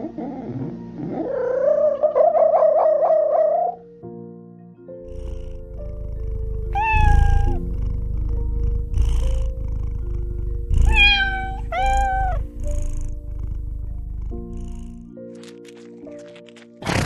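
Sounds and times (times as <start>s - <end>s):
cat purring: 5.0s - 17.0s
cat meowing: 6.6s - 7.7s, 10.7s - 12.9s.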